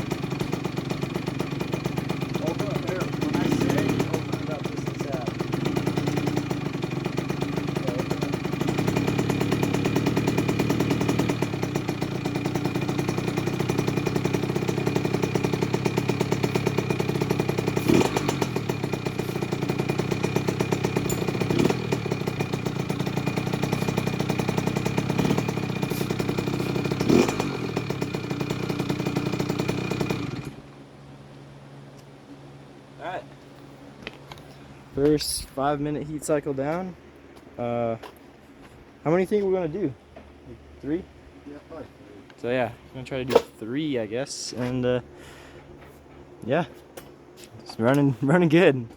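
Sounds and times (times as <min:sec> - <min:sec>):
two-stroke engine running: 0:00.0 - 0:30.8
engine revving blips: 0:16.5 - 0:19.7, 0:20.7 - 0:22.2, 0:24.8 - 0:28.1.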